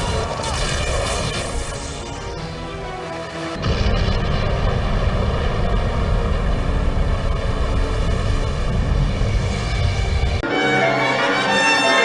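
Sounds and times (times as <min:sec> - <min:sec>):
loud low rumble: 0:03.6 - 0:10.4.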